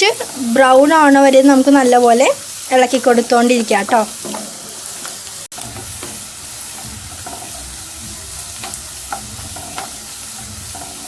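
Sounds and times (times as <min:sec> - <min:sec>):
garlic sizzling in oil: 0:00.0 - 0:11.0
light scrapes in pan: 0:06.8 - 0:11.0.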